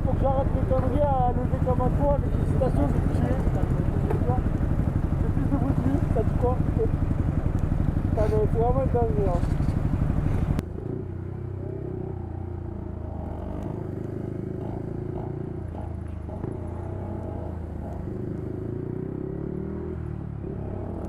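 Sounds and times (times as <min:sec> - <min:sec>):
motorcycle engine idling: 0:00.0 - 0:19.2.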